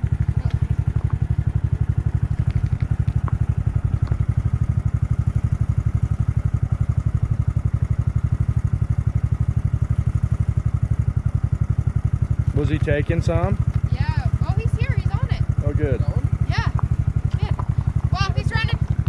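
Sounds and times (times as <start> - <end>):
engine idling: 0.0 - 19.0.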